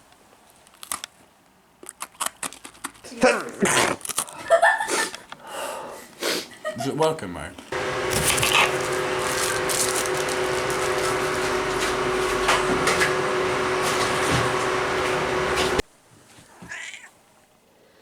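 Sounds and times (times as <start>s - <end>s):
machine whirring: 7.8s - 15.8s.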